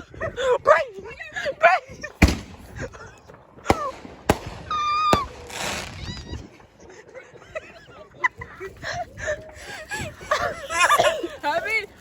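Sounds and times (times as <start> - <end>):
fireworks bangs: 2.1 - 6.8
firework whistle and hiss: 4.7 - 6.4.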